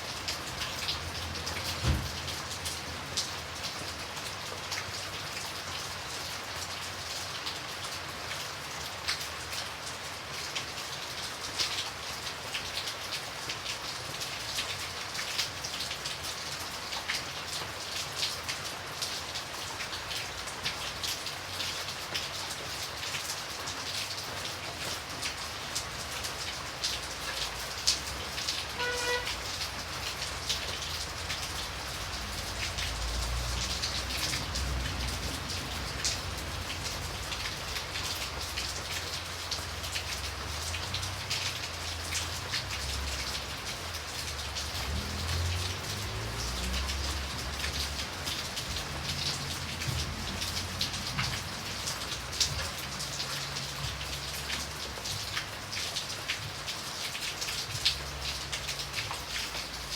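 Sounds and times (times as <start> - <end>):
rain hissing: 0.0 - 7.0, 11.9 - 59.9
raindrops tapping on surface: 0.0 - 59.9.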